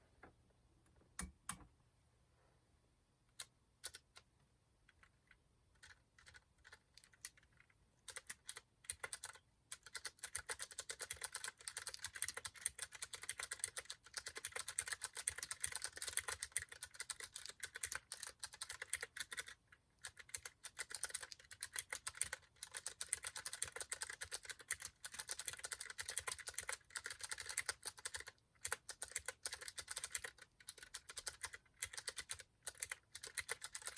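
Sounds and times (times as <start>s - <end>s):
clicky mechanical keyboard typing: 3.3s - 4.3s, 4.9s - 33.9s.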